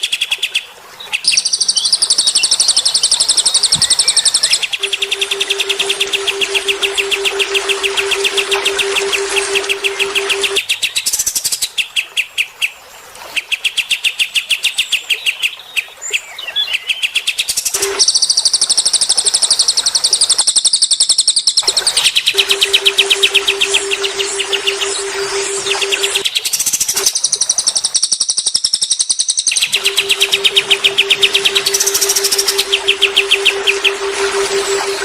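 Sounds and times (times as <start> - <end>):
songbirds trilling: 1.1 - 10.6, 28.7 - 35.0
steady low tone: 4.8 - 10.6, 22.4 - 26.2, 29.8 - 35.0.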